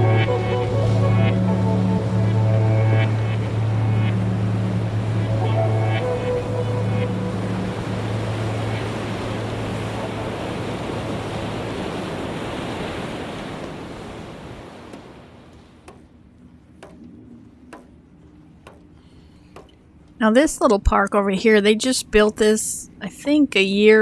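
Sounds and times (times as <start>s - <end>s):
low hum: 0.0s - 11.9s
loud steady rushing noise: 0.0s - 12.8s.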